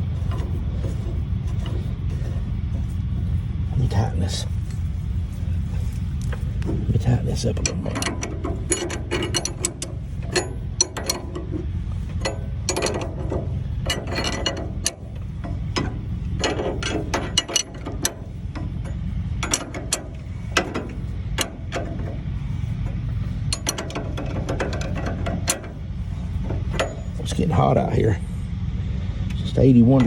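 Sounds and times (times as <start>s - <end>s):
low rumble: 0.0s - 30.0s
metal clinks: 7.1s - 27.4s
ratchet wrench clicking: 7.6s - 25.8s.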